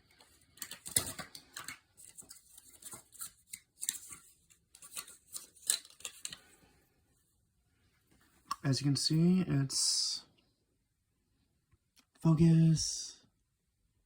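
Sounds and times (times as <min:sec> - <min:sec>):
plastic packaging rustling: 0:00.2 - 0:06.6.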